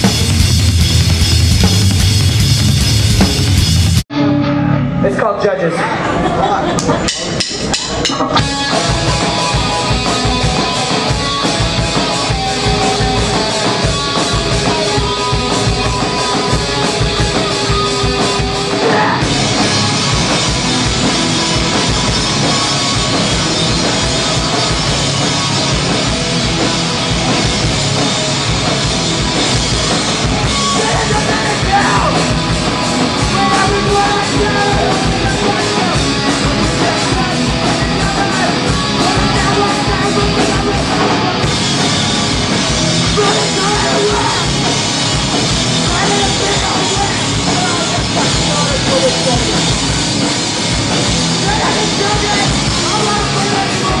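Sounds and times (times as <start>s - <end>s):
hardcore band playing live: 0.0s - 54.0s.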